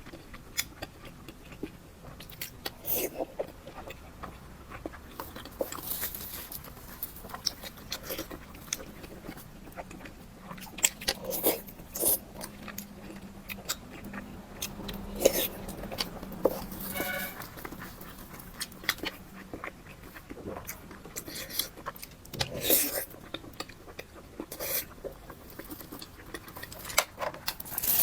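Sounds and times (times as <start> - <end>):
person chewing food: 0.0 - 28.0.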